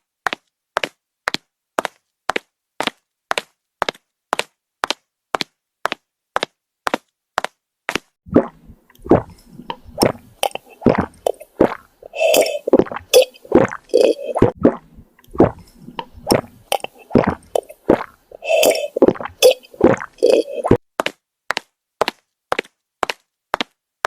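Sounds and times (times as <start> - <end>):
wet squelches and plops: 8.3 - 20.8.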